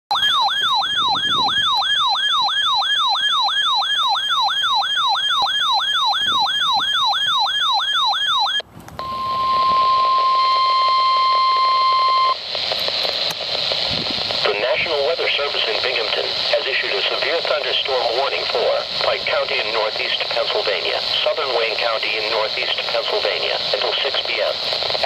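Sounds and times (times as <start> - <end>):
electronic siren-like alert: 0.1 - 12.5
steady warning alarm tone: 0.1 - 13.8
radio hiss: 9.6 - 25.0.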